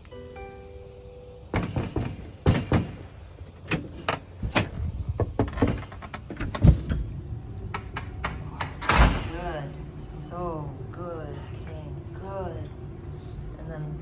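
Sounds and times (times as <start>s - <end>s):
front door opening: 0.0s - 11.9s
knocks clicks and clatters: 1.5s - 9.3s.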